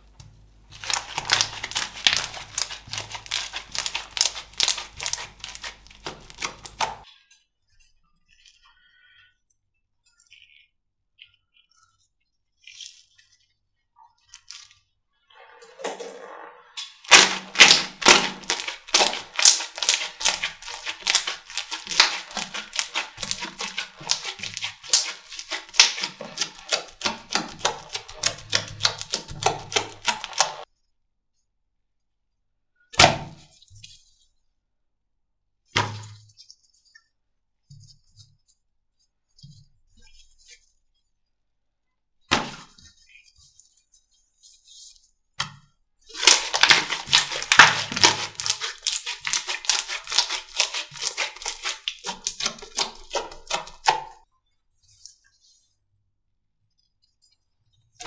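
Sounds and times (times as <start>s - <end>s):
slime crackling and popping: 0.0s - 7.0s, 17.0s - 30.6s, 46.1s - 54.2s.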